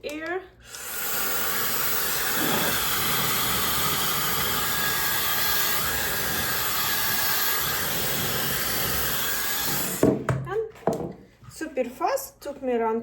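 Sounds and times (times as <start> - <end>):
hair dryer blowing: 0.7 - 10.2.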